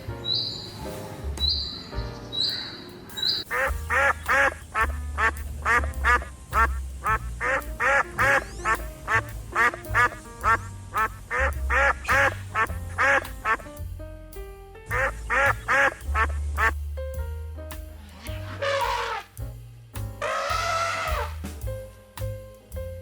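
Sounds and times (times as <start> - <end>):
background music with low bass: 3.2 - 23.0
animal calling: 18.2 - 19.4, 20.2 - 21.4.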